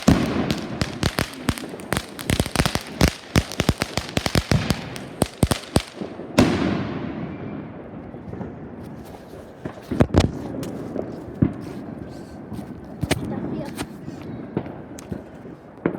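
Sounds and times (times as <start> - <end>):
firework hiss: 0.0 - 6.1
fireworks cracking and popping: 0.0 - 6.7, 8.3 - 12.2
firework bang: 0.0 - 7.3.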